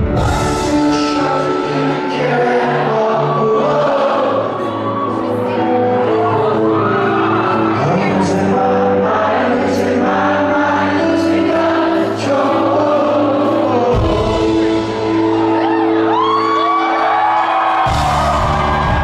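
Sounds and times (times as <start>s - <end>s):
deep bass: 0.0s - 1.4s, 17.9s - 19.0s
sung vocals: 0.0s - 16.2s
live rock band playing: 0.0s - 19.0s.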